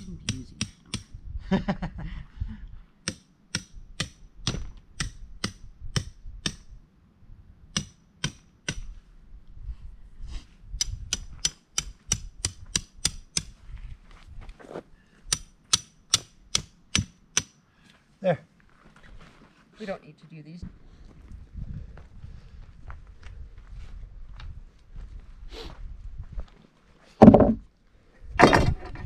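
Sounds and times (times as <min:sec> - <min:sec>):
hammer striking tent stakes: 0:00.0 - 0:01.2, 0:03.0 - 0:06.8, 0:07.7 - 0:09.0, 0:10.8 - 0:13.6, 0:15.3 - 0:17.6.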